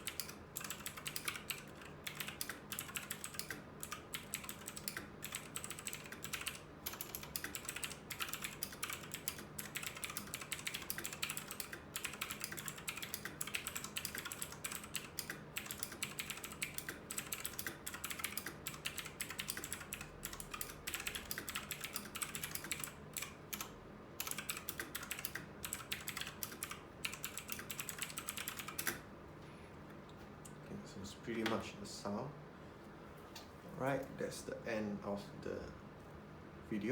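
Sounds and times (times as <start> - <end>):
clicky mechanical keyboard typing: 0.0 - 29.0.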